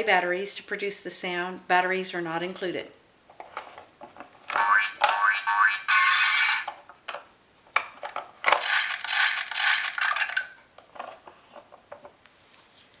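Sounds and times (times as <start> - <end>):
electronic toy sound effect: 4.5 - 6.8, 8.5 - 10.6.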